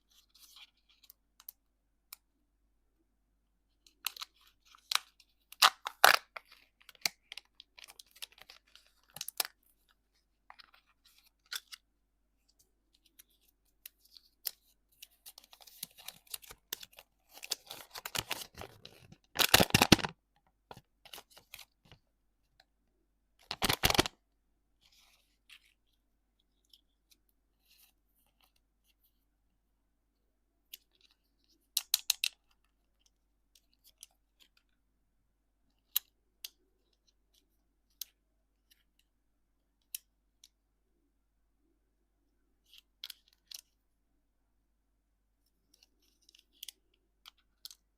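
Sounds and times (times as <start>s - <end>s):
candy wrapper crinkling: 4.0s - 9.6s, 15.3s - 20.1s, 23.4s - 24.1s.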